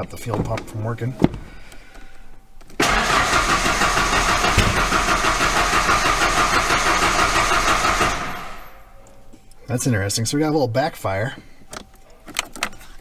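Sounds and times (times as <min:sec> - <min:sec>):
engine backfire: 0:02.8 - 0:09.0
engine cranking on starter: 0:02.8 - 0:09.0.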